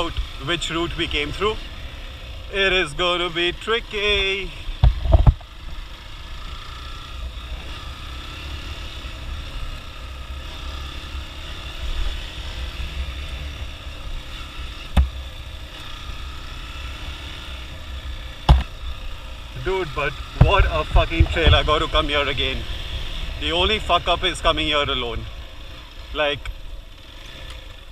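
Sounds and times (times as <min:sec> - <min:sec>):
motorcycle engine drone: 0:00.0 - 0:27.9
wind rumble on microphone: 0:04.8 - 0:05.4, 0:20.0 - 0:22.0
sharp knocks: 0:18.4 - 0:18.7.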